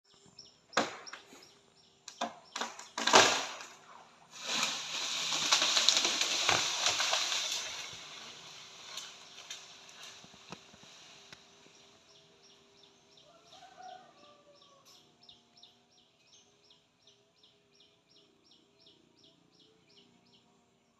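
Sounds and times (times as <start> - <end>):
sharp cracks and knocks: 0.7 - 1.4, 2.0 - 11.5
branches crashing down: 2.1 - 11.6.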